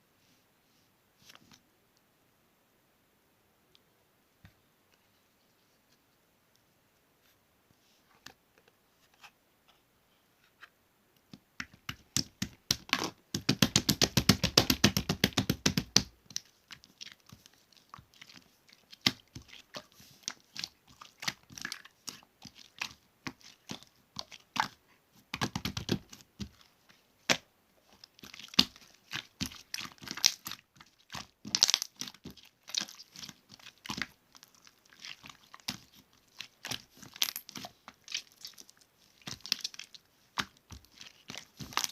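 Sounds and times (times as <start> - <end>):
slime squished by hand: 11.6 - 41.9.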